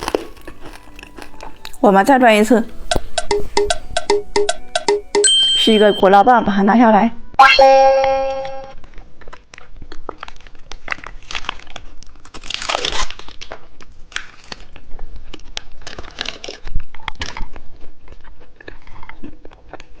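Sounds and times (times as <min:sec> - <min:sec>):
crunching bites: 0:00.0 - 0:01.8, 0:10.9 - 0:14.6
plastic wrapper crinkling: 0:00.0 - 0:02.8, 0:10.0 - 0:14.8.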